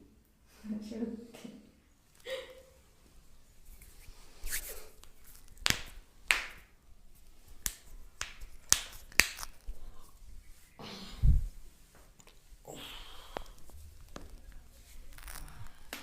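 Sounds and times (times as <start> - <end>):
hand slaps and snaps: 4.5 - 6.7, 7.6 - 9.7.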